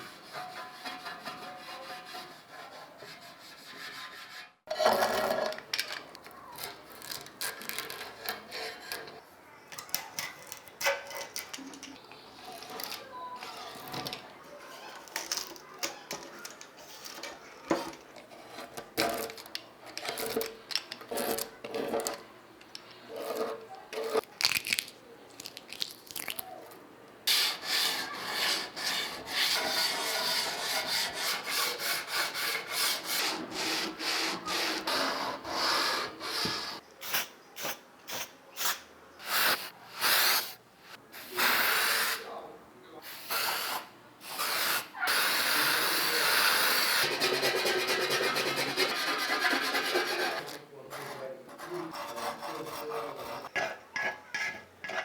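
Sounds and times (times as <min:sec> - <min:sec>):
scrubbing rusty metal: 0:00.0 - 0:05.5.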